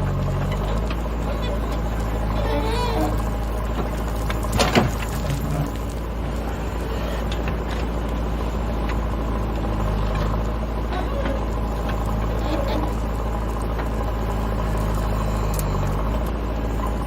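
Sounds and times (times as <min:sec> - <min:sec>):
diesel engine running: 0:00.0 - 0:17.0.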